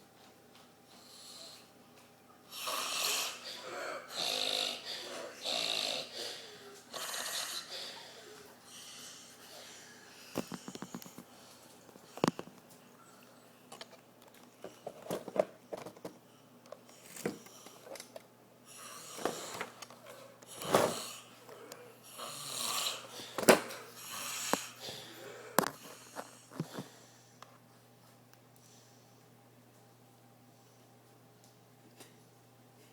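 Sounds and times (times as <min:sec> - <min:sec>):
man snoring: 0:02.5 - 0:08.3, 0:18.7 - 0:19.8, 0:20.6 - 0:23.3.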